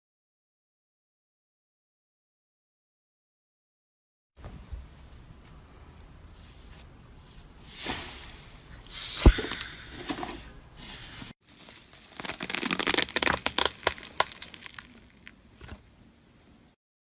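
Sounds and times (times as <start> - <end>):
slime crackling and popping: 11.5 - 15.8.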